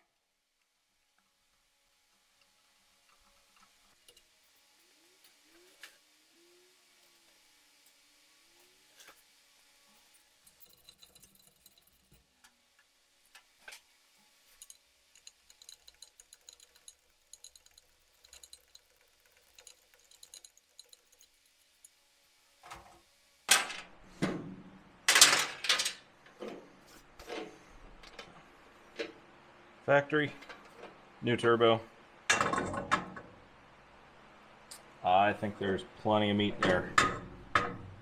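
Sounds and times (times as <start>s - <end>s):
small metal parts jingling: 9.8s - 12.2s, 14.4s - 22.0s.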